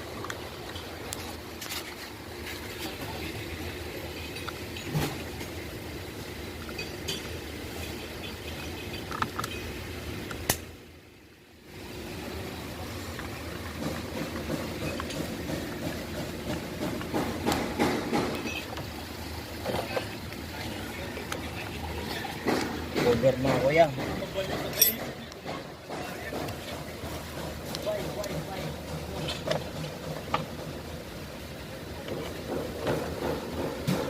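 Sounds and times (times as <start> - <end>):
steady background noise: 0.0 - 34.0
clicks and clinks of hand tools: 24.5 - 25.6.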